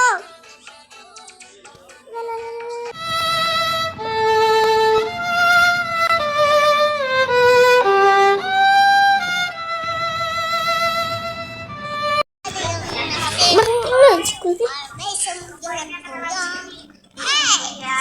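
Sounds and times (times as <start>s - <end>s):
solo violin melody: 3.0s - 11.0s.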